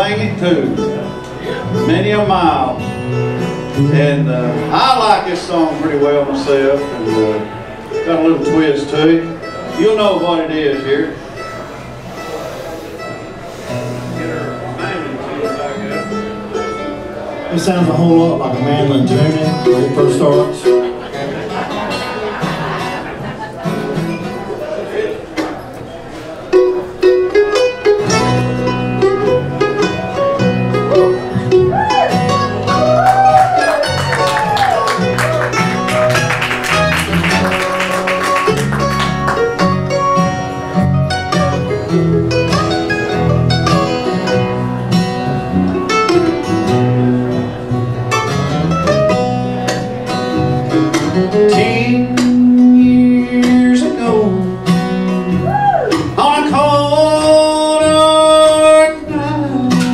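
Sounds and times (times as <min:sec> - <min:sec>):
bluegrass band playing: 0:00.0 - 0:59.9
guitar and plucked strings: 0:00.0 - 0:59.9
steady bass rhythm: 0:29.6 - 0:57.2.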